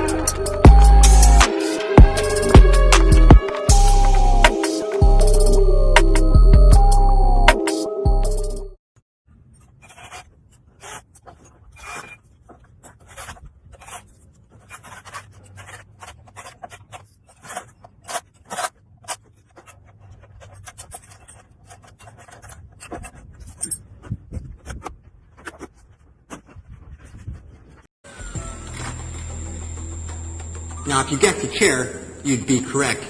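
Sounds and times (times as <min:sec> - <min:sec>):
scraping on wood: 0:09.4 - 0:27.9.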